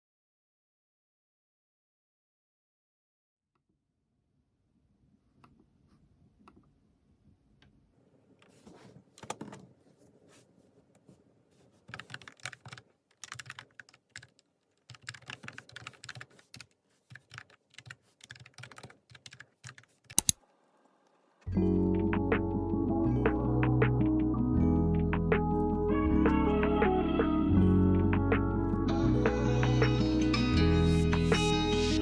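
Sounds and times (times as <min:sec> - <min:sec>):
computer keyboard typing: 0:11.9 - 0:20.4.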